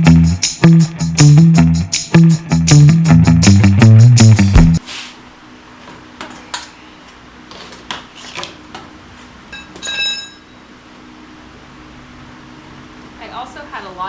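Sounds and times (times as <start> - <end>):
ringing metal clang: 9.5 - 10.6
metallic clinks of tools: 9.6 - 10.6.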